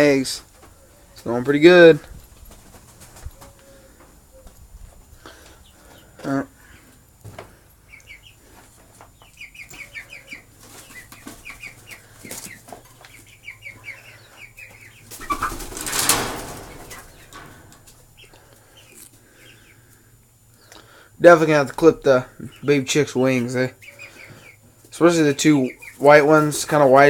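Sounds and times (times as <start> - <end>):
chicks peeping: 0.0 - 27.0
wings flapping: 2.3 - 3.6, 15.0 - 18.0.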